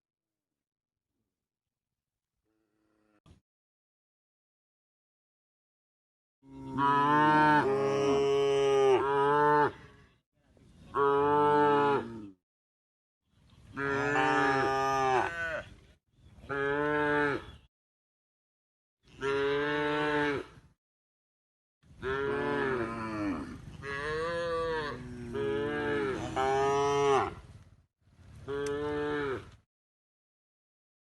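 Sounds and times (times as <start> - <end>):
cattle mooing: 22.0 - 27.4.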